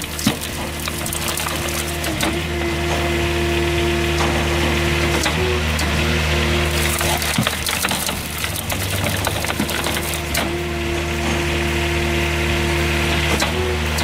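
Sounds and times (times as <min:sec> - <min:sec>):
wood cracking and splitting: 0:00.0 - 0:03.0, 0:06.6 - 0:11.4
engine and hydraulic hum: 0:00.0 - 0:14.0.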